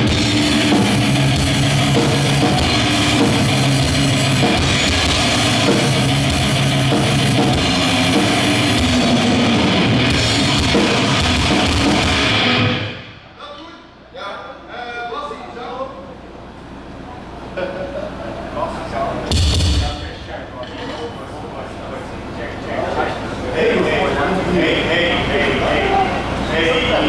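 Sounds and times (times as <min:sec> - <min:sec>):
metal band playing live: 0:00.0 - 0:13.2.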